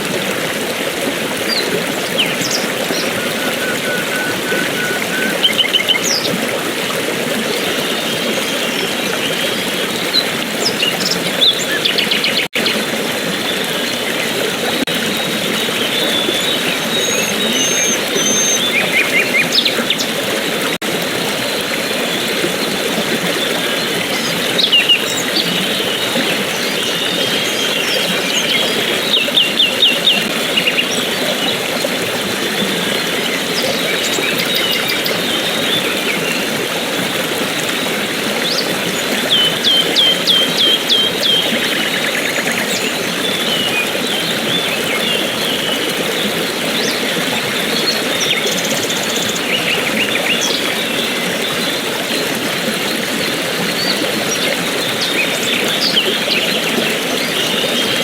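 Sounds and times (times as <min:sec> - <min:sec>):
rushing water: 0:00.0 - 0:58.0
birds chirping: 0:01.4 - 0:06.5, 0:13.4 - 0:20.7
sharp repeated bird notes: 0:02.2 - 0:06.3.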